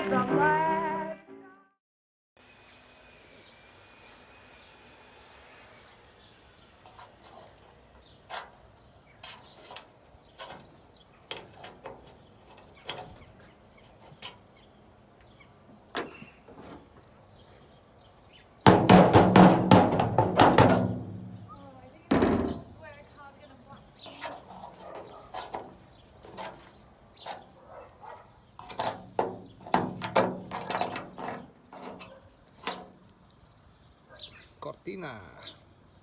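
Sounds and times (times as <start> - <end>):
clicks and knocks on car body: 18.7 - 21.5.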